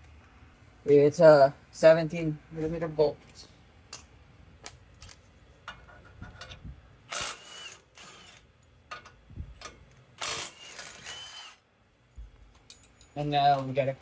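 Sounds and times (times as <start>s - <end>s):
ratchet wrench clicking: 6.4s - 11.6s.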